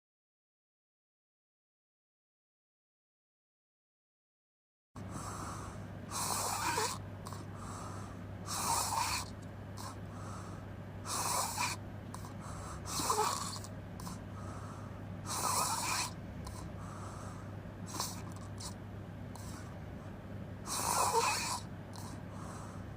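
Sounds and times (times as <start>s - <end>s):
person snoring: 5.0s - 18.8s, 19.4s - 19.8s, 20.6s - 22.9s.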